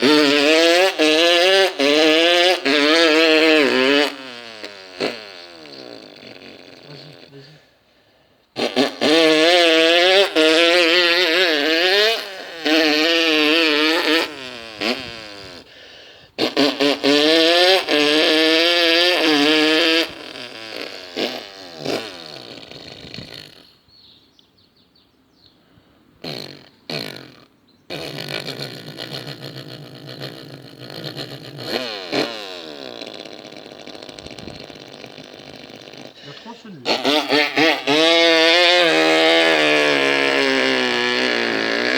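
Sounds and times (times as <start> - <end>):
person imitating motorbike engine: 0.0 - 7.7, 8.6 - 23.8, 26.2 - 41.9
mouth noises: 0.0 - 24.3, 25.6 - 41.9.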